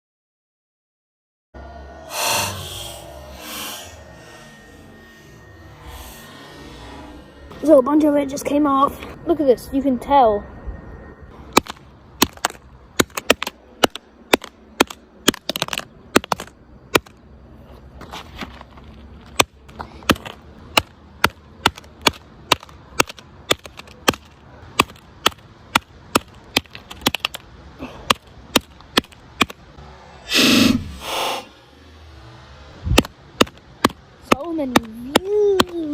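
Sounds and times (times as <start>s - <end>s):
hammer striking a phone: 11.5s - 17.1s.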